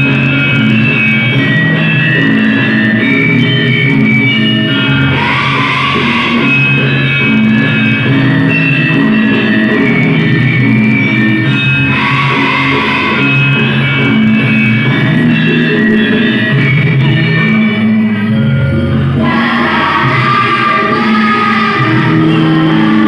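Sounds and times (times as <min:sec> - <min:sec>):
band music over sound system: 0:00.0 - 0:23.0.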